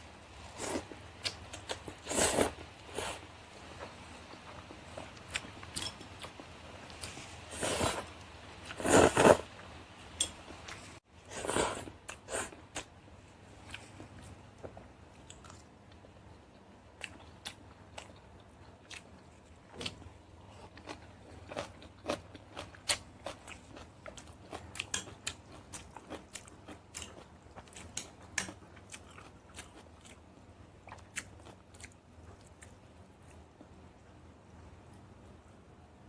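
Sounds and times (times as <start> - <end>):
person chewing crunchy food: 18.8 - 30.2.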